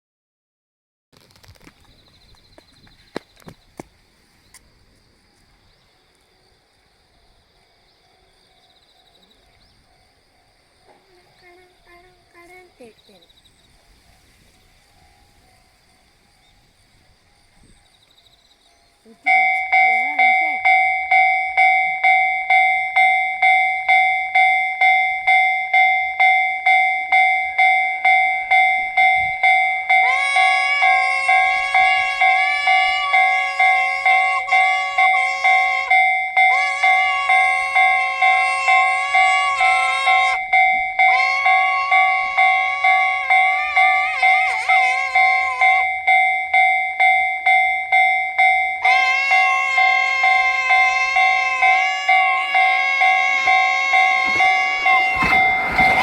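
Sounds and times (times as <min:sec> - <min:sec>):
insects trilling: 0:01.4 - 0:25.4, 0:28.4 - 0:56.0
level-crossing alarm ringing: 0:15.0 - 0:56.0.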